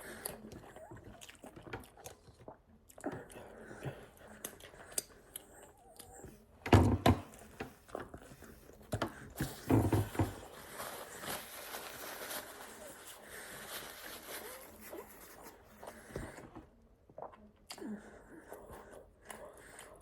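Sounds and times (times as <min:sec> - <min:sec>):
chewing and mouth smacks: 0:00.2 - 0:03.5, 0:17.1 - 0:17.9.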